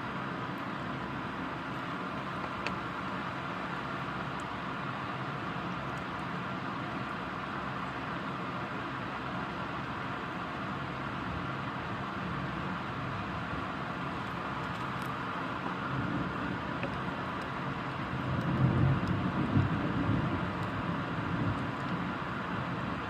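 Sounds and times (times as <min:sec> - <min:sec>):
thunder rumbling: 0:18.4 - 0:21.6.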